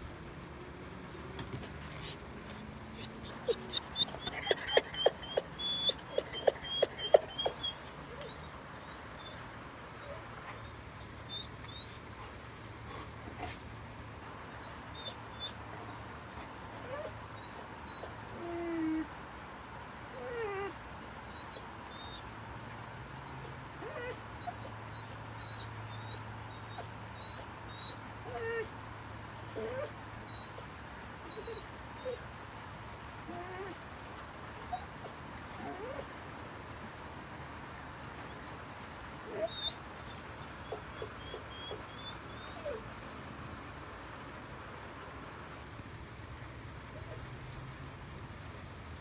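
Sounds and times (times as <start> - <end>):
dog whimpering: 3.0 - 9.4, 10.0 - 12.1, 14.6 - 15.6, 16.8 - 19.1, 20.1 - 20.8, 23.4 - 28.7, 29.4 - 32.2, 33.3 - 33.8, 34.7 - 36.1, 39.3 - 42.8.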